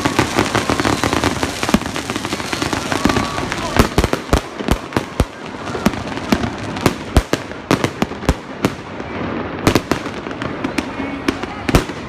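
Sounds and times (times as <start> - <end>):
fireworks bangs: 0.0 - 12.0.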